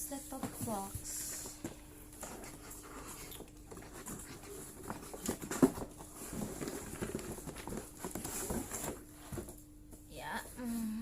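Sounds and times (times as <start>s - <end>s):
cardboard box scraping and knocks: 3.7s - 9.5s.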